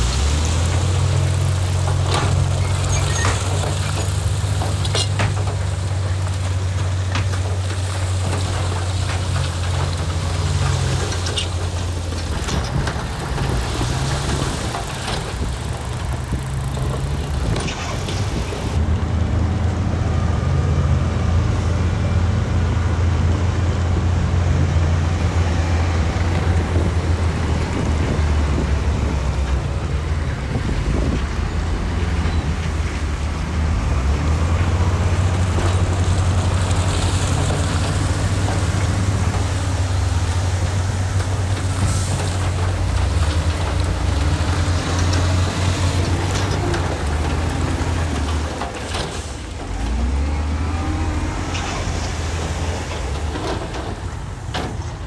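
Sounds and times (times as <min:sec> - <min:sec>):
metal clanks and rattles: 0:00.0 - 0:18.8
diesel machinery engine hum: 0:00.0 - 0:55.0.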